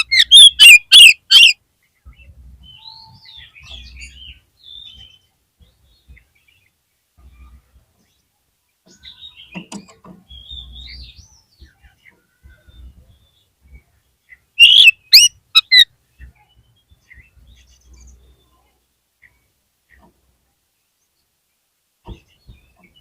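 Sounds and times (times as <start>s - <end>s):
bird singing and whistling: 0.0s - 1.6s, 14.6s - 15.8s.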